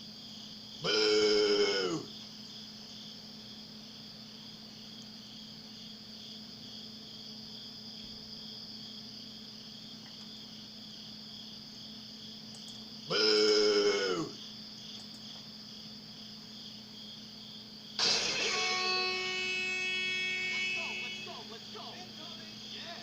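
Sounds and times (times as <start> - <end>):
insects chirping: 0.0 - 23.0
siren blast: 18.0 - 21.7.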